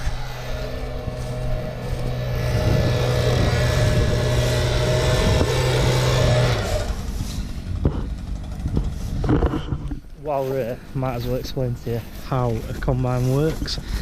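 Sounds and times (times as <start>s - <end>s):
leaf blower running: 0.0s - 10.9s.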